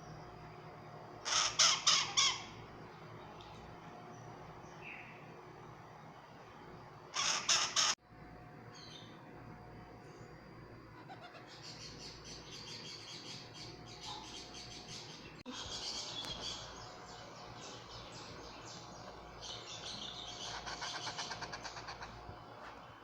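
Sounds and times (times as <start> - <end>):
parrot chirping: 1.2 - 2.6, 7.2 - 8.0.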